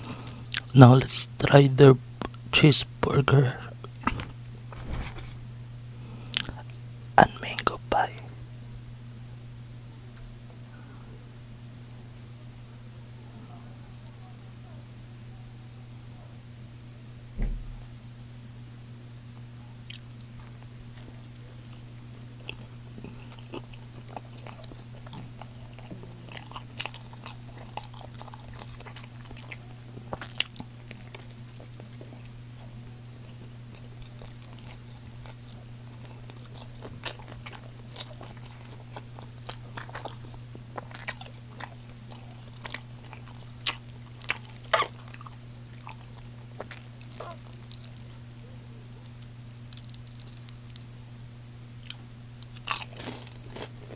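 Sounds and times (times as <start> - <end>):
crunchy biting and chewing: 0.0 - 1.4, 3.8 - 5.4, 6.0 - 8.4, 19.8 - 51.0, 51.8 - 53.9
steady low hum: 0.0 - 53.9.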